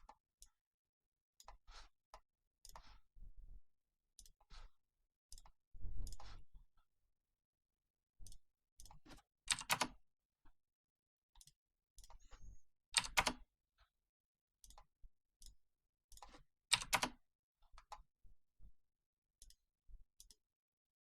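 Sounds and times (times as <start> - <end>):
computer mouse clicking: 1.4 - 2.9, 5.3 - 6.4, 8.2 - 10.0, 13.0 - 13.4, 16.1 - 17.1
computer keyboard clicking: 9.5 - 9.9, 13.0 - 13.4, 16.2 - 17.1.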